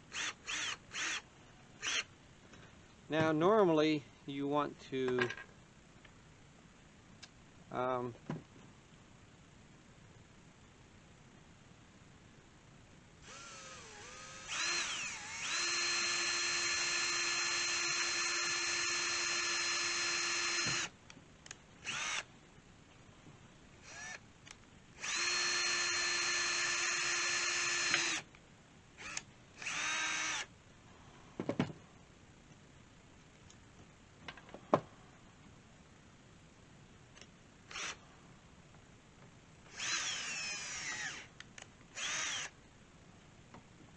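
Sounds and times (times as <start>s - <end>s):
electric drill whining: 0.1s - 1.2s, 1.8s - 2.1s, 13.2s - 20.9s, 21.8s - 22.3s, 23.8s - 24.2s, 25.0s - 28.3s, 29.0s - 30.5s, 37.7s - 38.0s, 39.7s - 41.3s, 42.0s - 42.5s.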